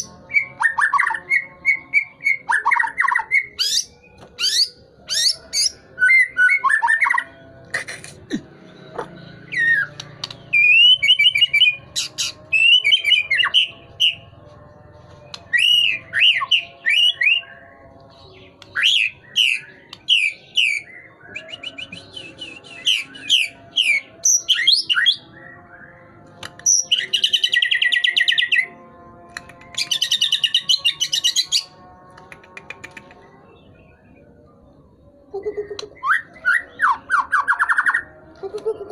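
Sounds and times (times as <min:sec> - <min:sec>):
songbird whistling and chattering: 0:00.0 - 0:14.2, 0:18.6 - 0:25.2, 0:26.4 - 0:28.5.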